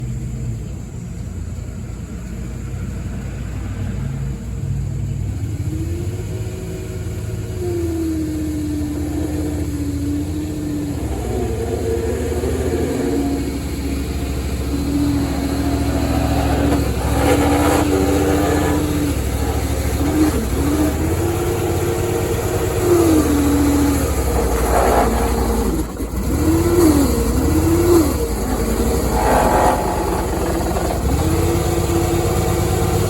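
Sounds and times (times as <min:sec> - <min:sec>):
engine running steadily: 0:00.0 - 0:33.0
whine rising and dipping in pitch: 0:07.8 - 0:26.1.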